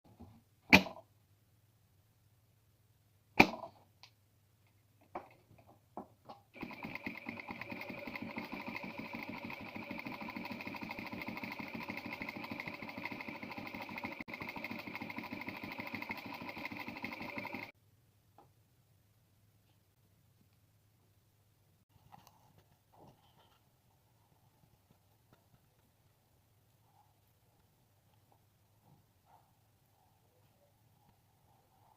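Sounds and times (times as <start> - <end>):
sewing machine stitching: 6.5 - 17.7.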